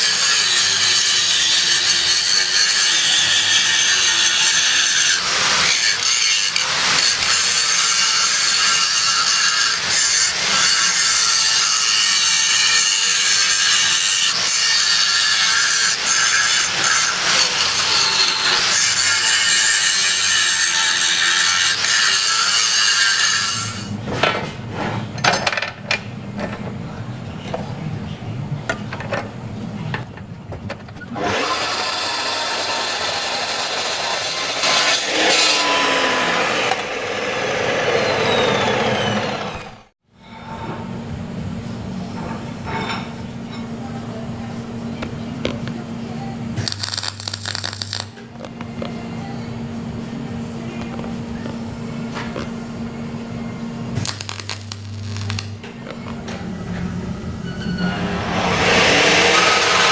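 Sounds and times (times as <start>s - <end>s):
angle grinder grinding steel: 0.0s - 23.9s, 31.2s - 39.9s, 46.6s - 48.2s, 54.0s - 56.0s, 57.4s - 59.9s.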